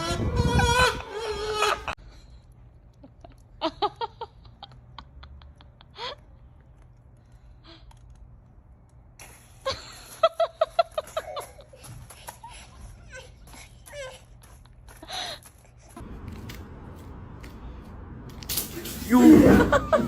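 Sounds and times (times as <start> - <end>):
person giggling: 19.3 - 20.0.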